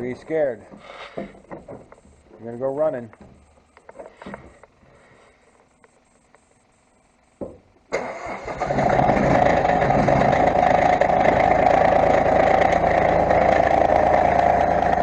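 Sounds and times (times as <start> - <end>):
tractor engine running: 7.9 - 15.0.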